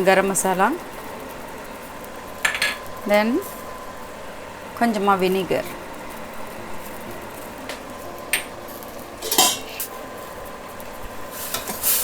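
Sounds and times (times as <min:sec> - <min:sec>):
metal spoon clinking on pan: 0:09.2 - 0:09.9.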